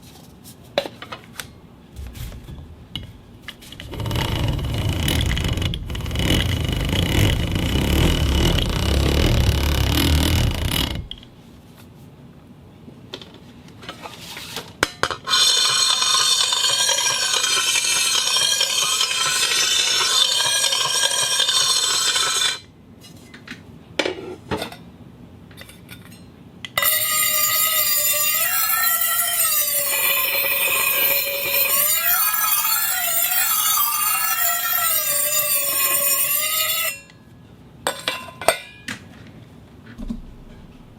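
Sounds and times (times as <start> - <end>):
objects scraping on concrete: 2.0 - 11.4, 13.9 - 23.3, 26.8 - 37.0
squealing scrape: 2.0 - 11.4, 26.8 - 37.0.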